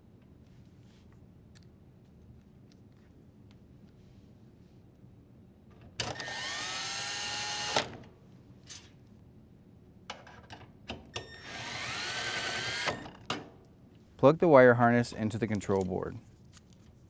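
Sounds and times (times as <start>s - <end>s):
drill driver whining: 6.0s - 8.0s, 11.2s - 13.3s.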